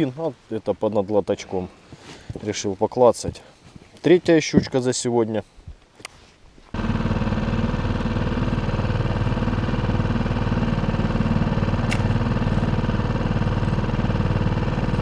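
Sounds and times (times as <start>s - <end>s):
outboard motor running: 6.8s - 15.0s.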